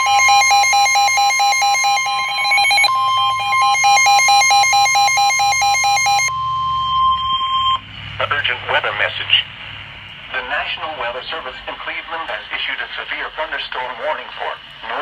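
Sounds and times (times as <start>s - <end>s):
fast electronic beeping: 0.0s - 7.8s
steady alert tone: 0.0s - 7.8s.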